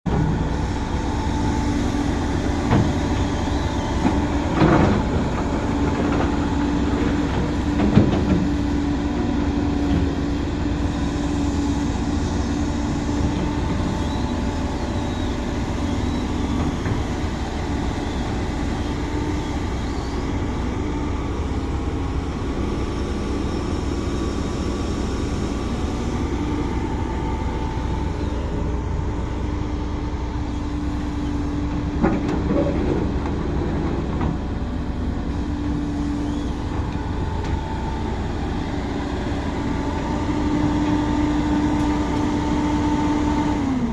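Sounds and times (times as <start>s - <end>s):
excavator engine rumbling: 0.0s - 43.9s.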